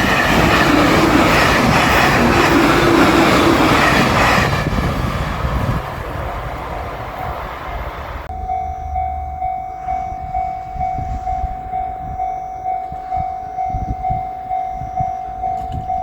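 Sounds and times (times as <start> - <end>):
railroad crossing bell ringing: 0.0 - 4.8, 8.3 - 16.0
low rumble: 4.7 - 16.0.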